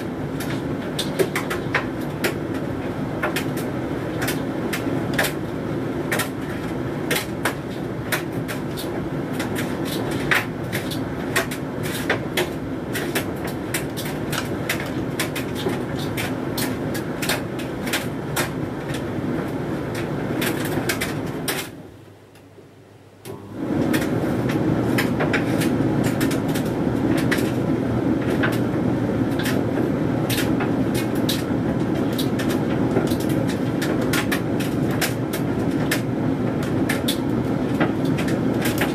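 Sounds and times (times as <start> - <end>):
clicks and knocks in dryer drum: 0.0 - 21.8, 23.3 - 38.9
tumble dryer running: 23.3 - 38.9.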